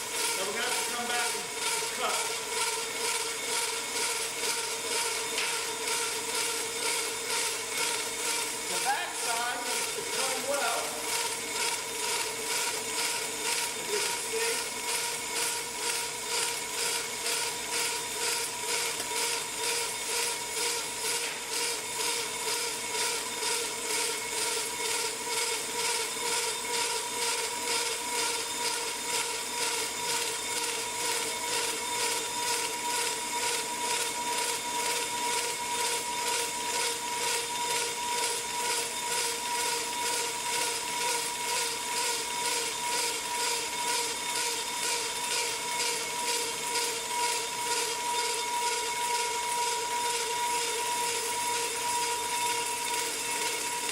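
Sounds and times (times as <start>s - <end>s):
motor whine: 0.0s - 53.9s.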